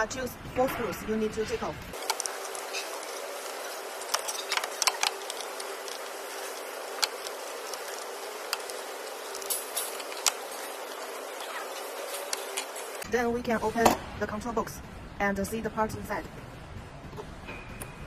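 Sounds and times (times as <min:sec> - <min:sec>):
steady hiss: 0:01.9 - 0:13.0.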